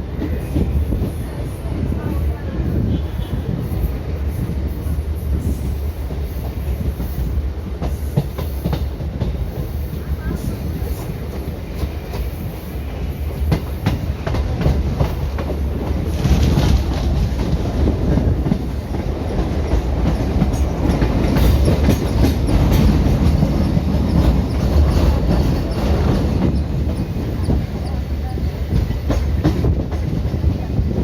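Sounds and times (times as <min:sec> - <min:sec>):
train coach rumble: 0:00.0 - 0:31.0
wheels clattering over rail joints: 0:18.2 - 0:28.0.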